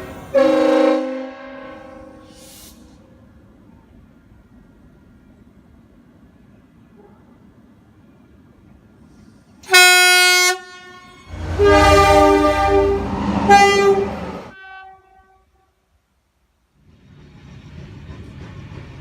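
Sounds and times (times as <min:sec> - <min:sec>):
train rumble: 0:00.0 - 0:15.0, 0:16.6 - 0:19.0
train horn blasts: 0:00.3 - 0:02.9, 0:09.6 - 0:15.7.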